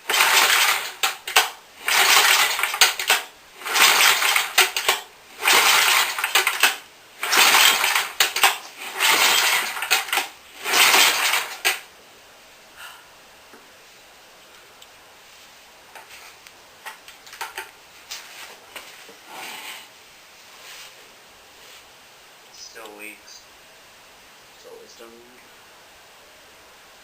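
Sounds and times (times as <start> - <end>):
small engine cranking: 0.0 - 11.8.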